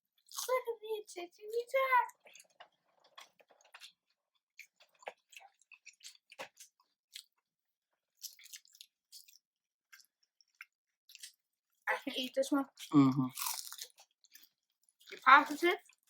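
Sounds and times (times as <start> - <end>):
person chewing food: 0.2 - 0.5, 2.1 - 11.7, 12.7 - 16.0
food crunching: 0.2 - 0.6, 2.1 - 7.5, 8.1 - 11.4, 12.7 - 16.0.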